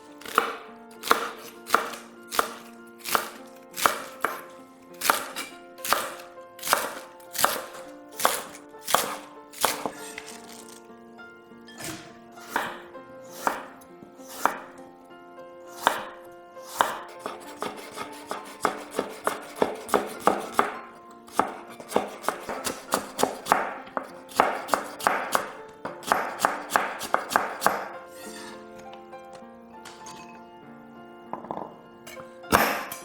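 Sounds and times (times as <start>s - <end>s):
soft background music: 0.0s - 33.0s
knife chopping on cutting board: 0.2s - 10.8s, 11.9s - 14.8s, 15.7s - 27.9s, 32.5s - 33.0s.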